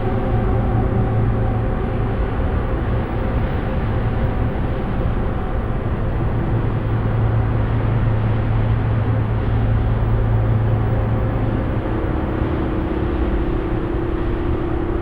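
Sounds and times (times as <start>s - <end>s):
dark ambient drone: 0.0s - 15.0s.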